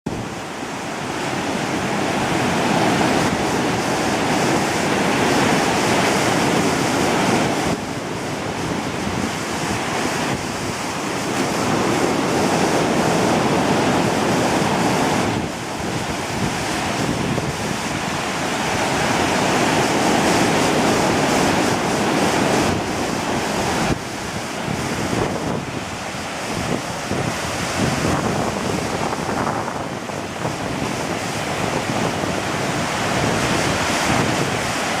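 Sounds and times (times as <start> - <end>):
ocean surf breaking on beach: 0.1 - 35.0
wind noise on microphone: 0.1 - 35.0.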